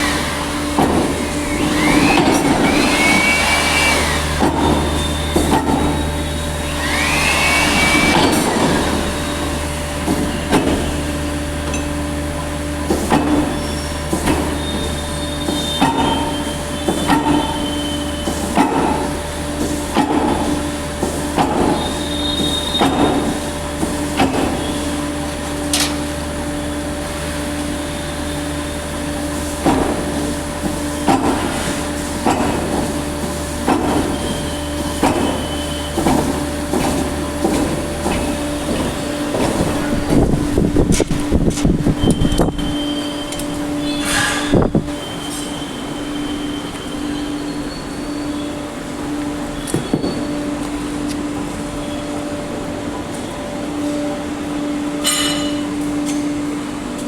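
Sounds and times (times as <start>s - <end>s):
machine hum: 0.0s - 17.0s
rising squeals: 1.3s - 9.8s, 41.8s - 54.0s.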